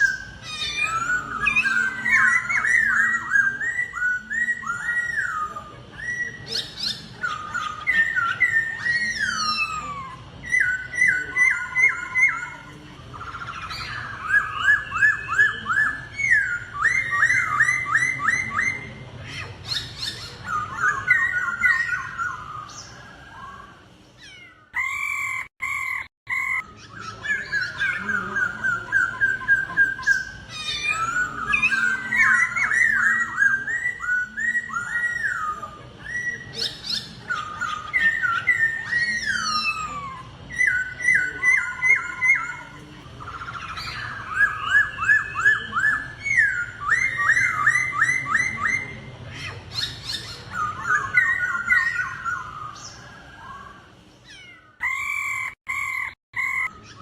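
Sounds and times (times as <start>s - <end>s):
bird singing whistled notes: 0.0s - 19.0s, 24.8s - 49.1s.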